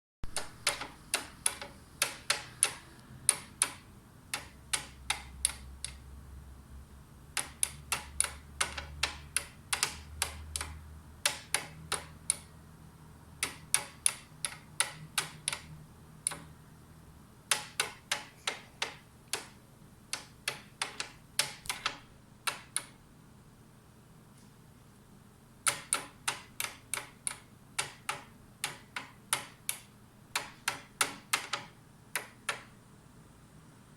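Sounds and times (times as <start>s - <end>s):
bird beak tapping on mirror: 7.4s - 12.5s, 13.4s - 15.7s, 17.5s - 23.0s, 25.7s - 29.8s.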